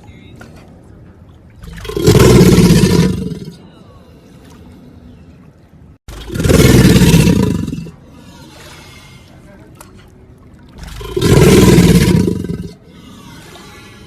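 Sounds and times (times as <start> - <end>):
crocodile hissing calls: 11.1 - 14.0.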